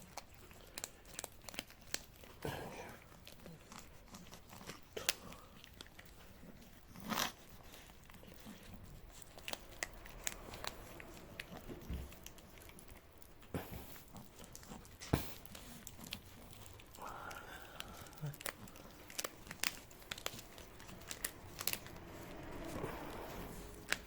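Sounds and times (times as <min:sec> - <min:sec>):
cats licking and chewing: 0:00.0 - 0:24.0
treat packet crinkling: 0:14.0 - 0:22.0.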